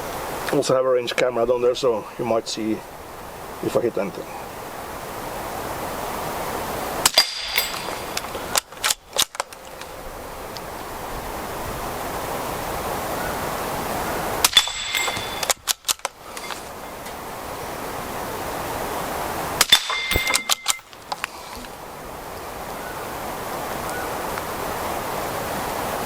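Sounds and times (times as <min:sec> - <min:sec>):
high metallic ring: 0:07.1 - 0:08.6, 0:14.5 - 0:15.7, 0:19.7 - 0:21.0
rifle shots: 0:19.6 - 0:21.0.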